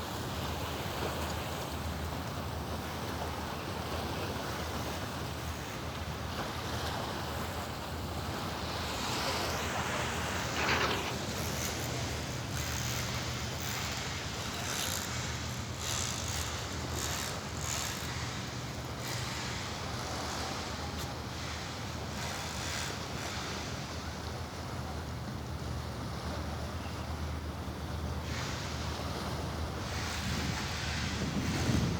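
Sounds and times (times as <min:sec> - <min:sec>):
sea waves washing on shore: 0:00.0 - 0:22.2
steady low hum: 0:04.2 - 0:23.1
wind buffeting microphone: 0:29.9 - 0:31.9.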